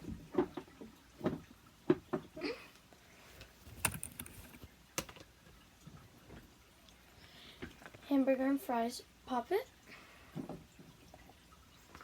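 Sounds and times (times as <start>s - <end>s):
plastic fidget toys clicking: 3.7s - 5.1s.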